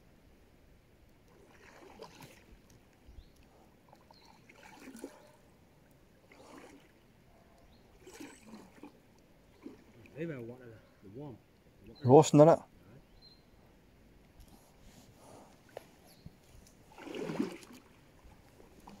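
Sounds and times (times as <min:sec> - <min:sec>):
kayak paddle swishing through water: 0:01.2 - 0:10.2, 0:14.7 - 0:19.0.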